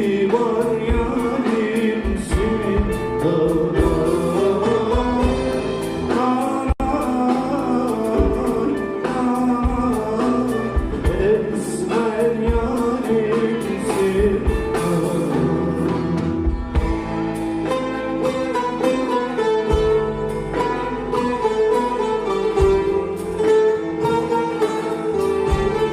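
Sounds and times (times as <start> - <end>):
person singing: 0.0 - 17.0
plucked string instruments: 0.0 - 25.9.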